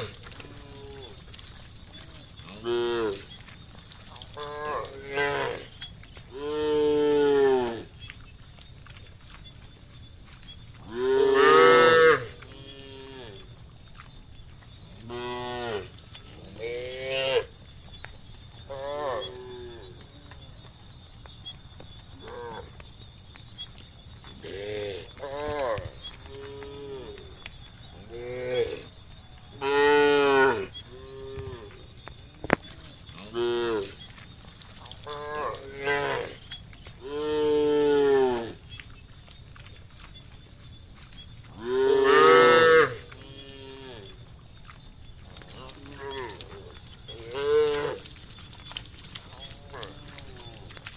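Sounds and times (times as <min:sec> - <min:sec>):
cows mooing: 0:01.9 - 0:03.3, 0:04.3 - 0:05.7, 0:06.3 - 0:07.9, 0:10.8 - 0:13.4, 0:29.6 - 0:31.8, 0:33.1 - 0:34.1, 0:35.0 - 0:36.4, 0:37.0 - 0:38.6, 0:41.5 - 0:44.2, 0:45.4 - 0:48.2, 0:49.3 - 0:50.9.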